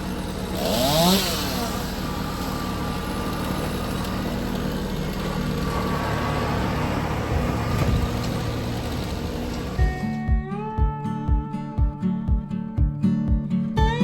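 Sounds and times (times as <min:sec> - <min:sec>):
engine running: 0:00.0 - 0:12.9
low thumps: 0:07.1 - 0:14.0.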